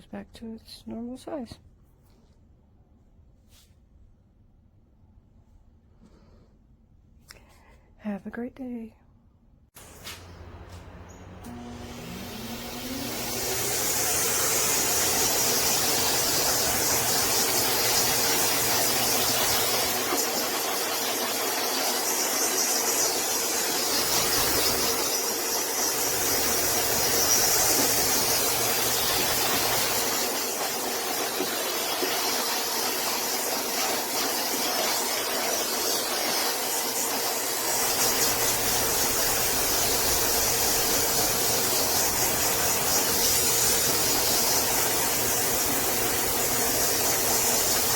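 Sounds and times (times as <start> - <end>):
hair dryer motor whine: 9.8 - 47.9
hair dryer rushing air: 9.8 - 47.9.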